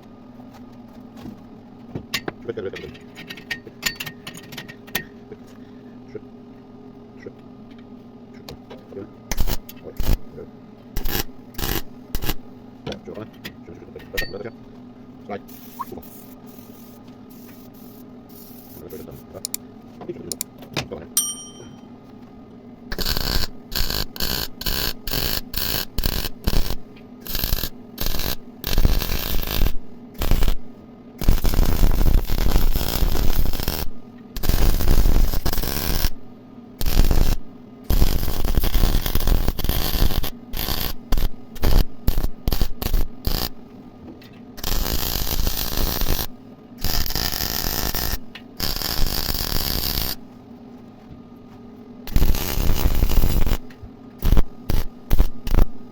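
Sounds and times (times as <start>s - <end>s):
electric arc welding: 9.3s - 10.4s, 11.0s - 12.4s, 22.9s - 30.6s, 31.2s - 36.2s, 36.8s - 43.6s, 44.6s - 50.2s, 52.1s - 55.8s.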